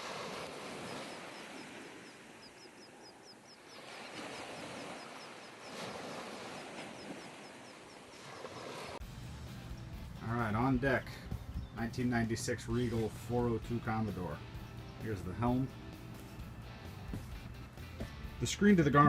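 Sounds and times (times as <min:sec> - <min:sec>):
small bird chirping rapidly: 0:00.8 - 0:05.8, 0:11.4 - 0:11.8.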